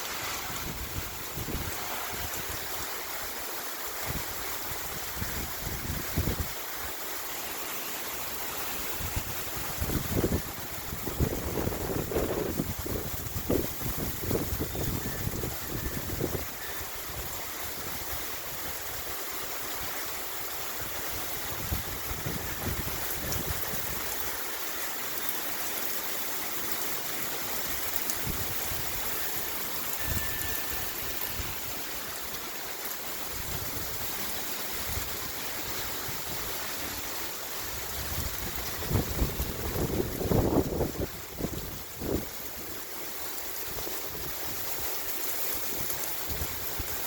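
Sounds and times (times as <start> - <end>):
heavy rain falling: 0.0 - 47.0
wind buffeting microphone: 0.2 - 2.8, 9.0 - 16.6, 21.2 - 24.2, 37.8 - 42.3.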